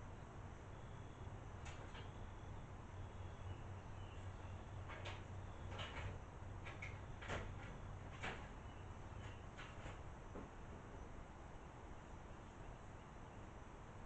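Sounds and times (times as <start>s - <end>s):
faint low hum: 0.0s - 14.0s
light clicks and knocks: 4.8s - 10.9s.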